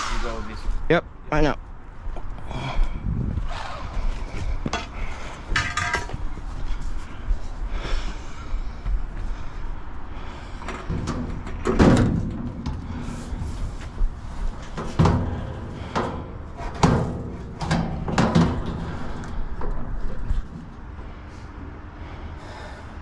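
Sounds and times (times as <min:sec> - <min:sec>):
hollow knocks of heavy parts: 0:04.2 - 0:06.8, 0:10.6 - 0:21.1.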